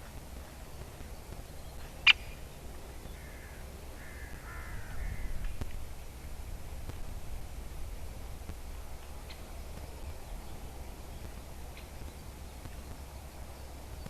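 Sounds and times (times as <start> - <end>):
faint bird calls: 0.9 - 5.8
woodpecker sharp call: 2.0 - 2.5.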